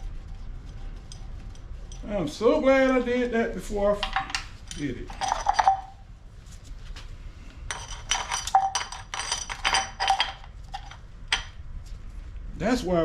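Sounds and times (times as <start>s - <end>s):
metal tools clinking: 4.0s - 6.0s, 7.7s - 11.6s.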